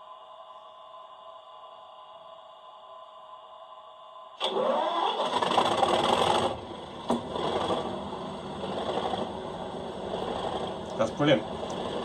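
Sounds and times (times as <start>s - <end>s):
faint steady hum: 0.0s - 5.1s, 6.4s - 12.0s
diesel engine starting up: 4.4s - 12.0s.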